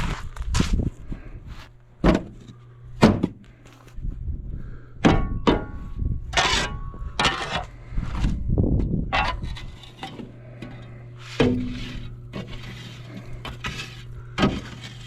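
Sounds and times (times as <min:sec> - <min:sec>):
rough scraping rustles: 0:00.0 - 0:02.7, 0:03.4 - 0:04.0, 0:09.3 - 0:15.0
heavy thunks: 0:01.5 - 0:03.9.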